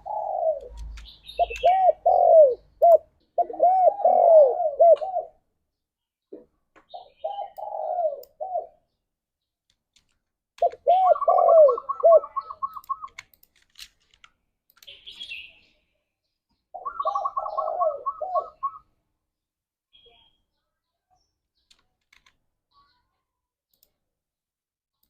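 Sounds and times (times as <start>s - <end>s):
doves cooing: 0.0s - 5.4s, 6.9s - 8.8s, 10.6s - 13.2s, 16.8s - 18.8s.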